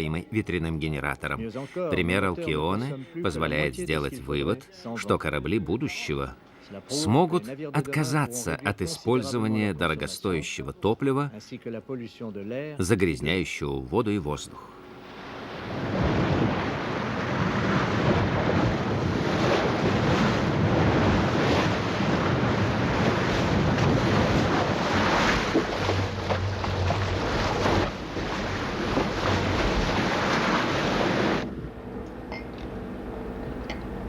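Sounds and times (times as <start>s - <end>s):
low hum: 14.6s - 34.0s
waves rushing: 14.6s - 34.0s
strong wind on microphone: 15.6s - 31.8s.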